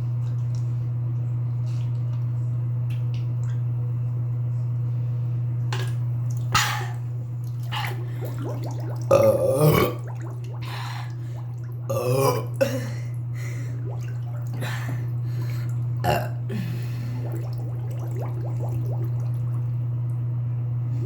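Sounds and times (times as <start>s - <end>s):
steady low hum: 0.0s - 21.0s
person burping: 9.1s - 10.2s, 11.9s - 13.1s, 16.0s - 16.6s.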